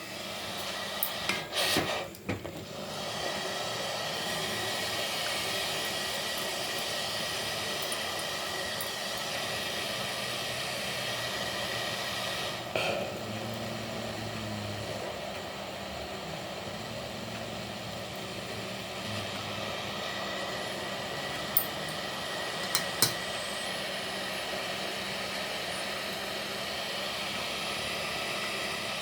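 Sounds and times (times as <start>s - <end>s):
metal kitchenware clinking: 22.7s - 23.2s.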